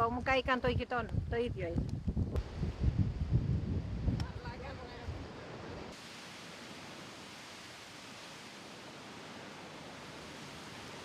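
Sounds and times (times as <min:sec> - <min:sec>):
steady even hiss: 0:04.2 - 0:11.0.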